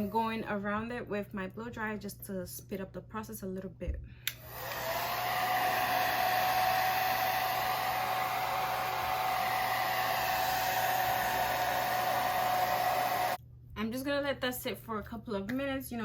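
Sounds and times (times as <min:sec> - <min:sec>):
blow dryer running: 0:04.3 - 0:13.4.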